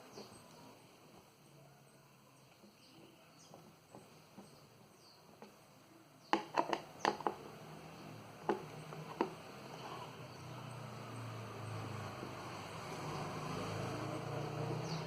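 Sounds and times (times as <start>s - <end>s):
screwdriver clicks and knocks: 6.4s - 7.4s.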